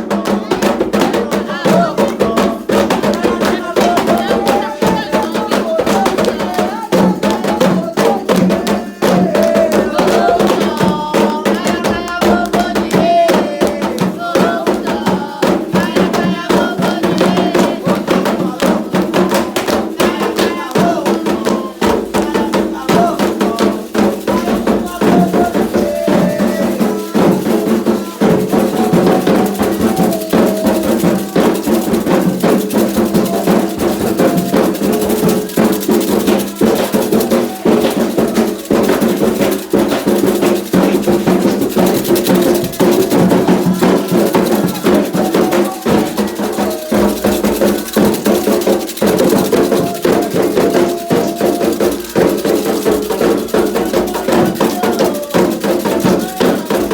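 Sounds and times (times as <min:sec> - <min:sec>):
hand drums playing: 0:00.0 - 0:56.9
shaken rattles: 0:00.0 - 0:56.9
voices singing: 0:00.0 - 0:56.9.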